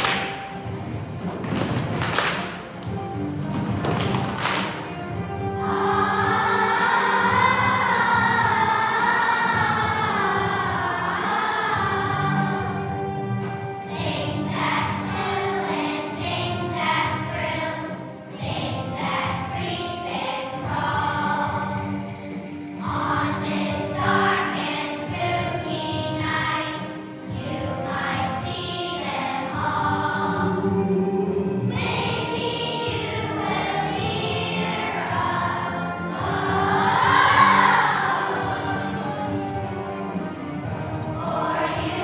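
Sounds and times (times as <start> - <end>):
children's choir singing: 0.0 - 42.0
musical accompaniment: 0.0 - 42.0.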